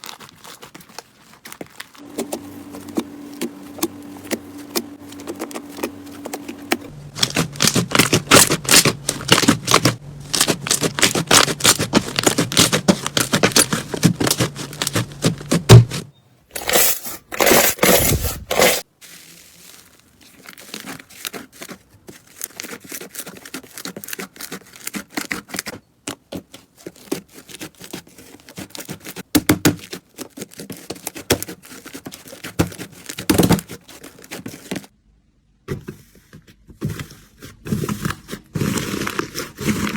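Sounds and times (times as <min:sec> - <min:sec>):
slime crackling and popping: 0:07.2 - 0:15.2.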